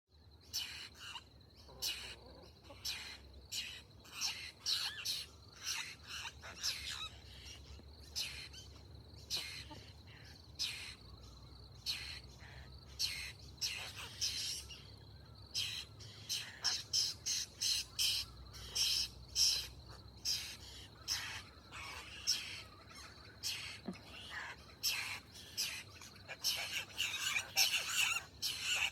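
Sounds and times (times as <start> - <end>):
bird harsh chirps: 15.6 - 28.9.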